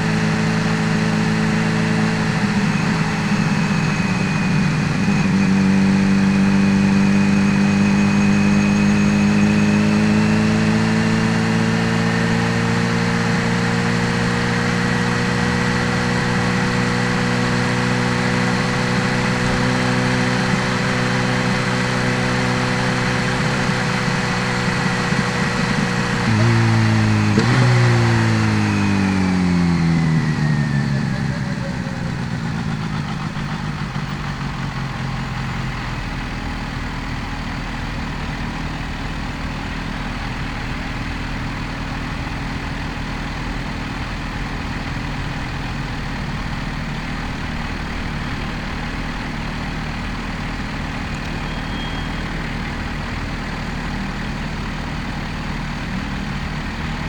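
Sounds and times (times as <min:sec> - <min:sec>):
high engine whine: 0:00.0 - 0:57.0
motorcycle engine idling: 0:15.2 - 0:57.0.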